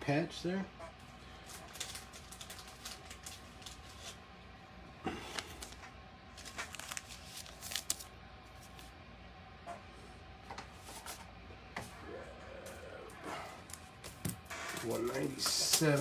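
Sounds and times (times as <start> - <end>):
cards clicking and rustling: 1.4 - 4.2, 5.3 - 8.9, 13.6 - 16.0.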